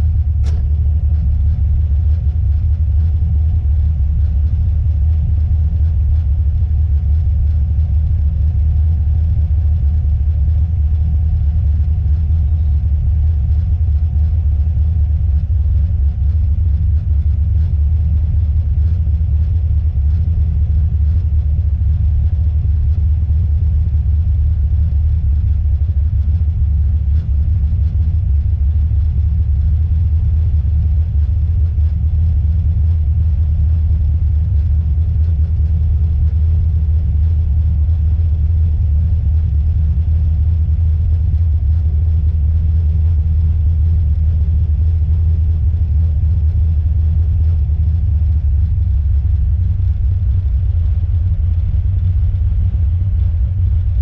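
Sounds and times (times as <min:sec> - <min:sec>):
car engine rumble: 0:00.0 - 0:54.0.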